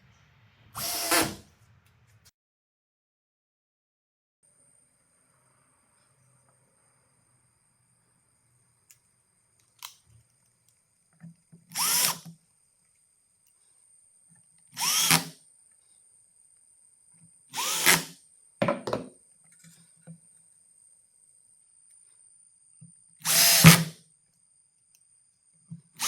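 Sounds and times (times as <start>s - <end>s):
electric drill bursts: 0.8s - 1.4s, 11.7s - 12.3s, 14.7s - 15.4s, 17.5s - 18.2s, 23.2s - 24.0s
small knocks: 18.6s - 20.2s.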